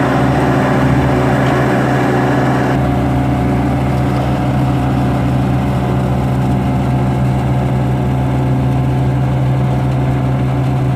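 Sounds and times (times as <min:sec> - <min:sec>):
harvesting machine engine running: 0:00.0 - 0:02.8.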